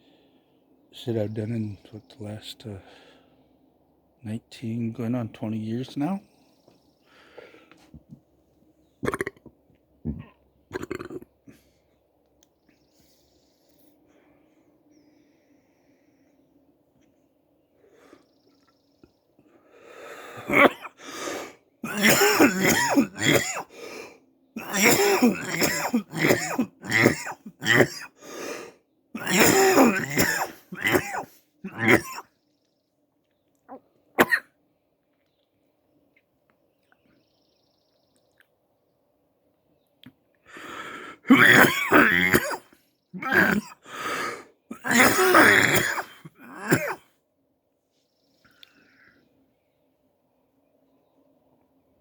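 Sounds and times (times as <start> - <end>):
wheezy breath: 7.0 - 7.9, 19.5 - 21.6, 28.2 - 28.8, 40.5 - 41.3, 43.8 - 44.5
man coughing: 20.4 - 21.1, 21.8 - 23.8, 24.6 - 28.2, 29.2 - 32.2, 34.2 - 34.4, 41.3 - 47.0.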